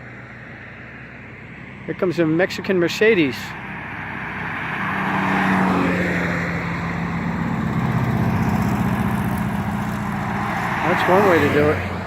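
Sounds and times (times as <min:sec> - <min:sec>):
vehicle driving past: 0:03.3 - 0:12.0.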